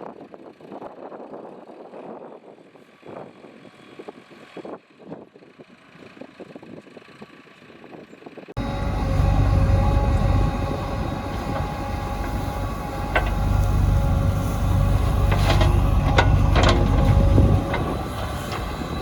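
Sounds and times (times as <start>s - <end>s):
diesel engine running under load: 8.6s - 19.0s
steady whine: 8.6s - 19.0s.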